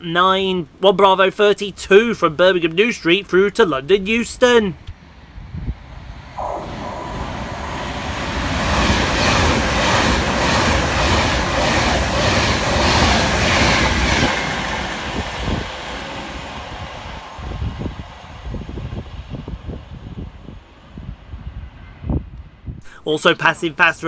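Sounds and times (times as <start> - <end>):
wheels on rail rushing: 2.4 - 22.7
train passing at speed: 2.6 - 24.0.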